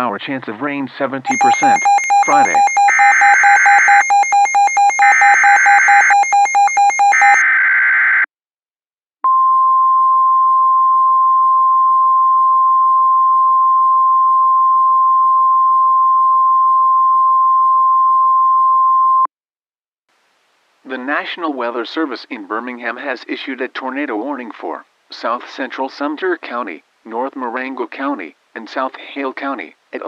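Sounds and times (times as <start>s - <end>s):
chirping alert data bursts: 1.3s - 7.4s
steady alarm tone: 1.3s - 8.2s.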